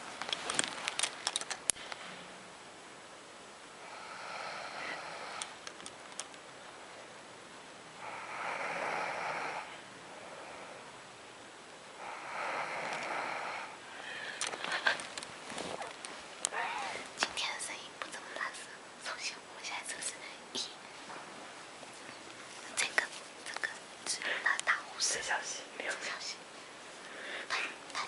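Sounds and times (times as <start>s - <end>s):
person snoring: 3.8s - 5.6s, 8.0s - 10.8s, 12.0s - 14.4s.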